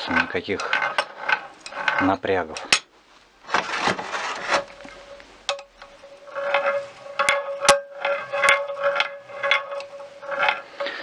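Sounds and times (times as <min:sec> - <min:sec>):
metal parts rattling: 0:03.5 - 0:11.0
steady ringing tone: 0:04.8 - 0:11.0.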